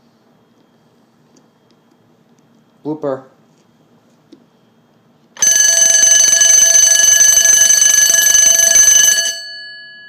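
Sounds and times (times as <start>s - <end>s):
fire alarm bell ringing: 5.4s - 10.0s.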